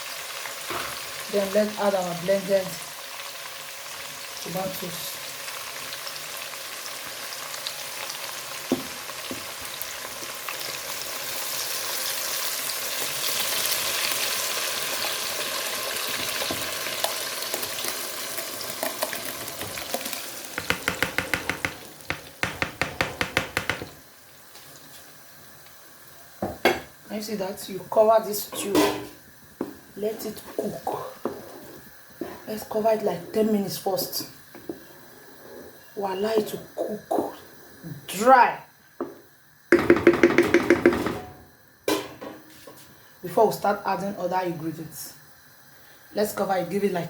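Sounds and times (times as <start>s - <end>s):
tomatoes sizzling in oil: 0.0s - 47.0s
spoon knocking against pot: 20.6s - 24.0s, 39.0s - 42.4s.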